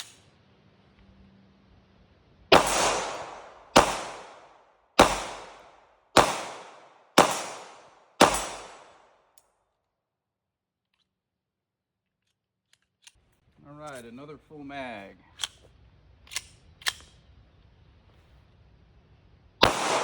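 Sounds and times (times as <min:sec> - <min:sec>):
pistol shots with echo: 0:02.5 - 0:09.1, 0:19.6 - 0:20.0.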